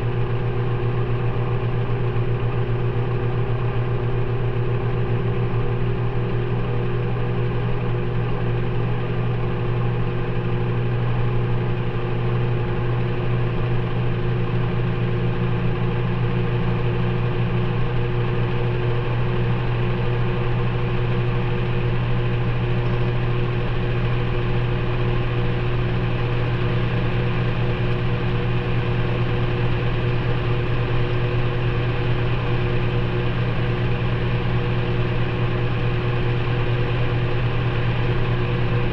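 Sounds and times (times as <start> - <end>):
washing machine motor hum: 0.0 - 38.9.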